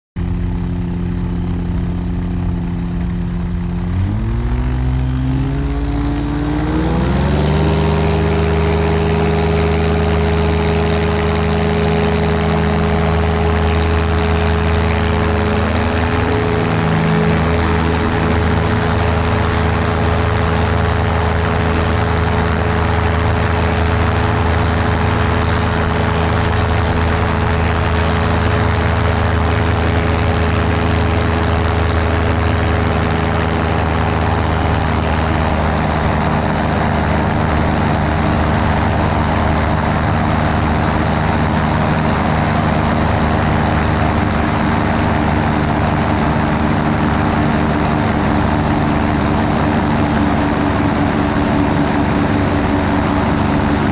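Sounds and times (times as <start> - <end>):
helicopter droning: 0.2 - 53.9.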